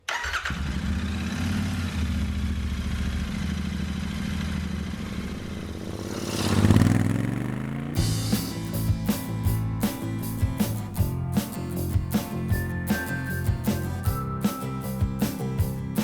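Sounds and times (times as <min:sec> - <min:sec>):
motorcycle engine idling and revving: 0:00.1 - 0:11.3.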